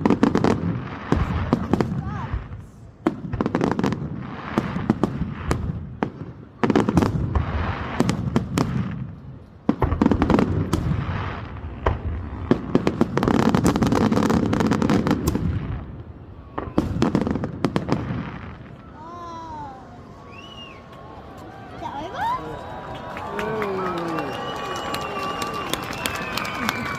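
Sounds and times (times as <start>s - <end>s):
firework bangs: 0.0s - 19.6s
firework crackling: 0.0s - 21.4s, 22.0s - 26.9s.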